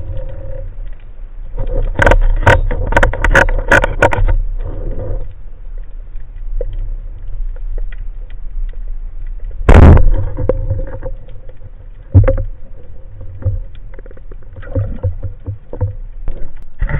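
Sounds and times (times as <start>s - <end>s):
small clicks: 0.0s - 16.9s
underwater water rumble: 0.0s - 16.9s
sharp knock: 9.7s - 10.2s
sudden burst of noise: 9.7s - 10.5s.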